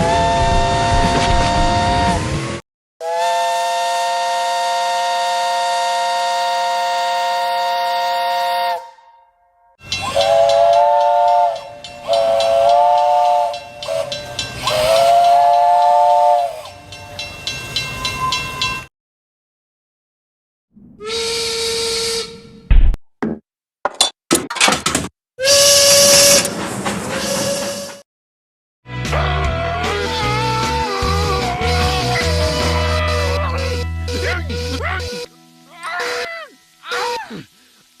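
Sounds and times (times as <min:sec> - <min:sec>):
steam train whistle: 0:00.0 - 0:17.0, 0:21.0 - 0:22.6, 0:25.4 - 0:28.0, 0:29.2 - 0:37.8
hissing steam: 0:09.9 - 0:16.8.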